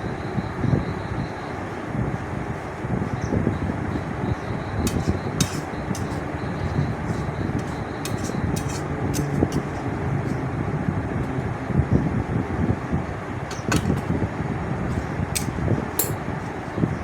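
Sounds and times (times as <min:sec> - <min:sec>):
paste frying and bubbling: 0:04.8 - 0:10.4
spatula scraping a pan: 0:04.9 - 0:10.4.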